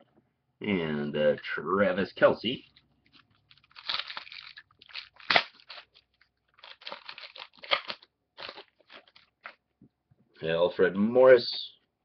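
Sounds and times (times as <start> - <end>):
wrapper crinkling: 2.6 - 9.6.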